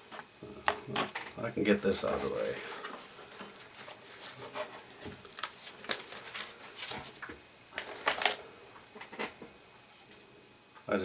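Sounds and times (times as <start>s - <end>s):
soft rustling: 2.0s - 7.3s.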